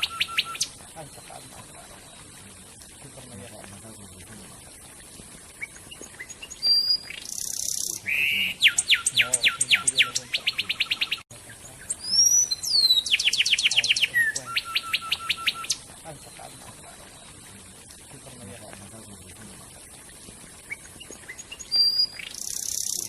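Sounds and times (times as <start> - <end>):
songbird whistled trill: 0.0 - 1.4, 5.6 - 11.2, 11.8 - 16.6, 20.7 - 23.0.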